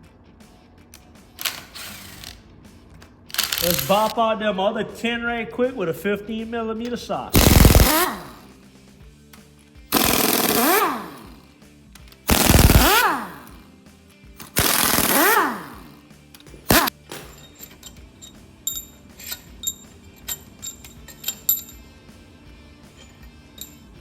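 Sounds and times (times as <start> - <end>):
metallic clinks of bolts and tools: 3.3 - 4.1, 16.3 - 22.0, 22.8 - 24.0
impact wrench hammering: 7.3 - 8.5, 9.9 - 11.4, 12.2 - 13.6, 14.4 - 17.4.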